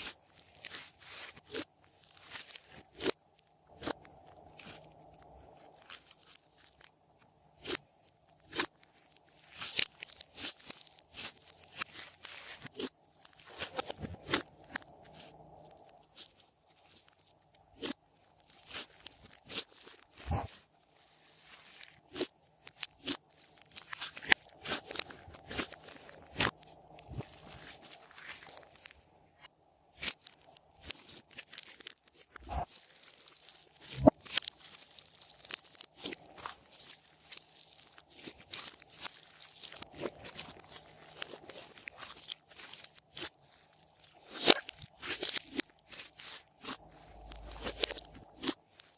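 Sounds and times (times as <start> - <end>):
slime squishing with sticky clicks: 30.0 - 48.9.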